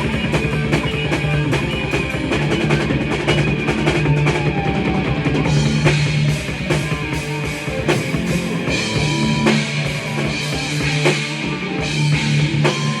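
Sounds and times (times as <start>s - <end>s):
distorted guitar: 0.0s - 13.0s
rock music: 0.0s - 13.0s
drum strikes: 5.5s - 13.0s.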